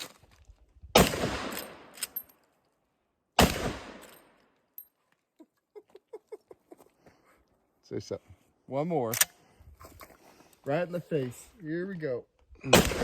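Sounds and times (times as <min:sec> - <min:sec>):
rifle shots: 0:00.9 - 0:02.0, 0:03.4 - 0:04.2, 0:12.7 - 0:13.0.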